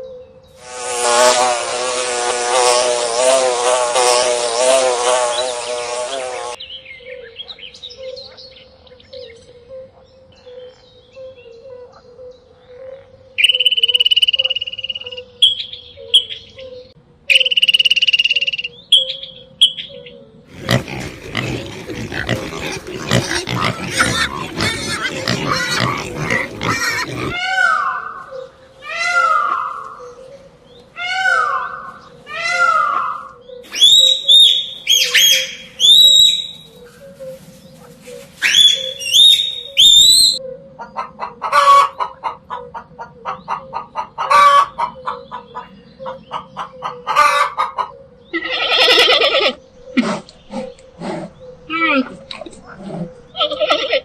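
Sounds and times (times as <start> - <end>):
animal calls: 20.5 - 30.2, 31.0 - 54.0.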